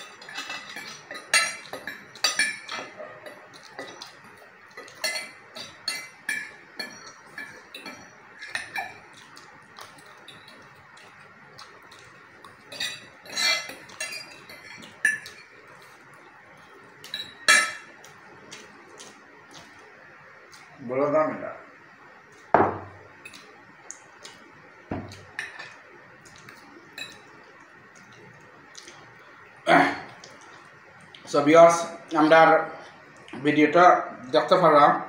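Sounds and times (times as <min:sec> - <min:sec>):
cutlery clinking against dishes: 0:00.0 - 0:10.7, 0:11.9 - 0:15.6, 0:17.0 - 0:18.0, 0:25.0 - 0:25.8.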